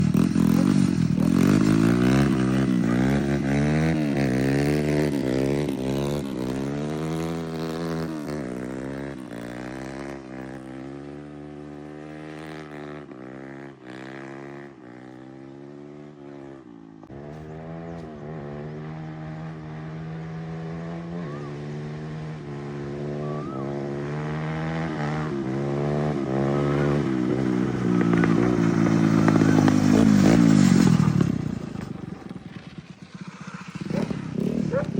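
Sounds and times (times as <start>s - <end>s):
go-kart engine revving: 0.0s - 34.9s.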